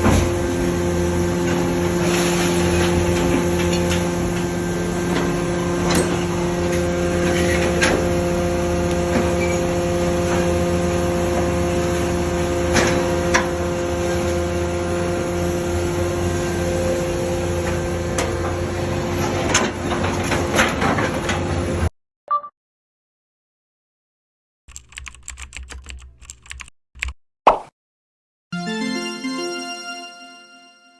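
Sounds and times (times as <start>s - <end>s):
hydraulic power unit humming: 0.0s - 19.5s.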